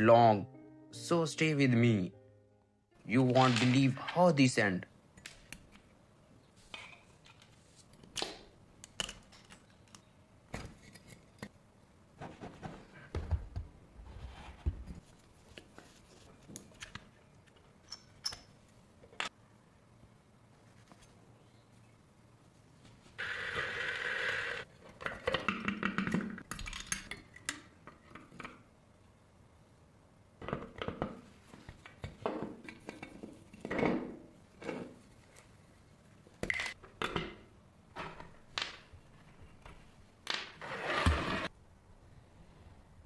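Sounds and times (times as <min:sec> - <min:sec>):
loud scrape: 0:40.6 - 0:41.5.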